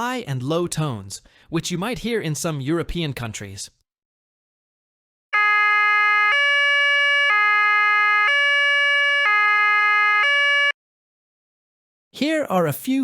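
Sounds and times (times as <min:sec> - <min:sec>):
hi-lo police siren: 0:05.4 - 0:10.8.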